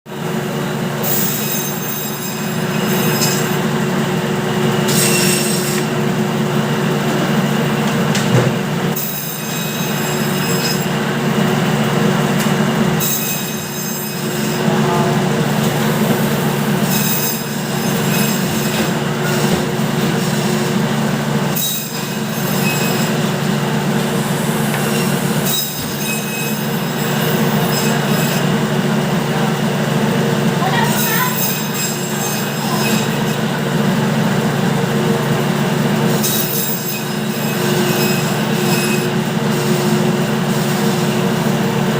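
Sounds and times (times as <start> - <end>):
bandsaw motor humming: 0.1 - 41.9
bandsaw blade shrill whine: 1.0 - 3.9, 4.5 - 6.1, 8.9 - 11.2, 12.8 - 28.8, 30.6 - 33.7, 36.0 - 41.8.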